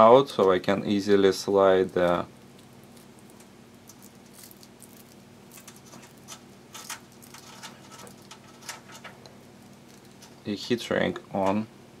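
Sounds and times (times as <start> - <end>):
low steady hum: 0.0 - 12.0
thin plastic crinkling and clicking: 1.7 - 10.5.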